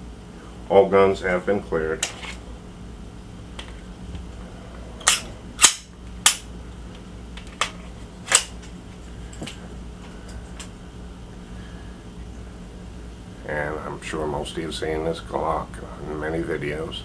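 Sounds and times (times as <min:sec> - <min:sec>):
pistol mechanical clicks: 0:05.0 - 0:06.5.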